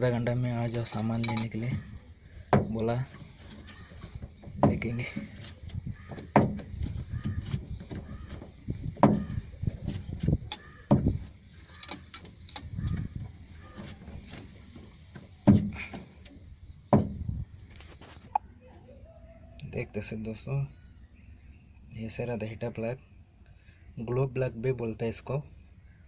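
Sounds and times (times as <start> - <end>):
metal tools knocking and clinking: 0.3 - 1.9
rustling: 0.4 - 16.5.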